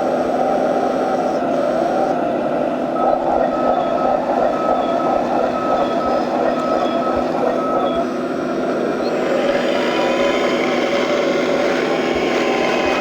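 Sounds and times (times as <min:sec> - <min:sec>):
model machines mechanical whir: 0:00.0 - 0:13.0
high beeping: 0:03.0 - 0:08.2.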